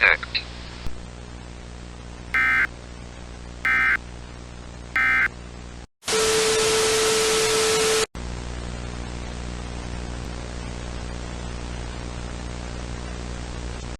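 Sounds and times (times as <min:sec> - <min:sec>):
digital data tone bursts: 0:02.4 - 0:02.7, 0:03.7 - 0:04.0, 0:05.0 - 0:05.3.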